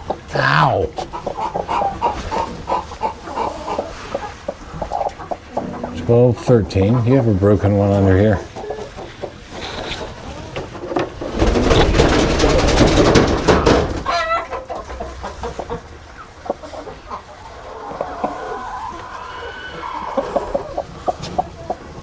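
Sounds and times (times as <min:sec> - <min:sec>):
chickens clucking and squawking: 0:00.0 - 0:22.0
hen's drawn-out call: 0:17.8 - 0:20.8.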